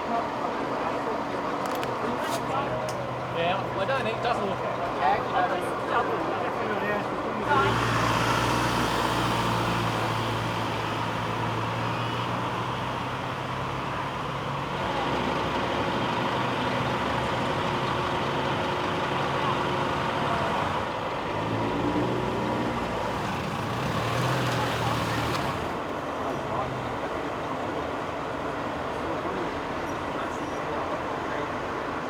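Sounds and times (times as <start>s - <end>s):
road traffic noise: 0.0s - 32.0s
engine hum: 7.3s - 30.3s.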